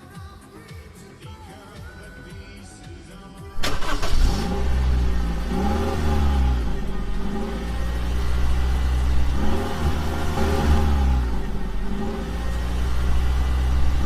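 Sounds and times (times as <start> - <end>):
car engine starting and revving: 3.6 - 14.0.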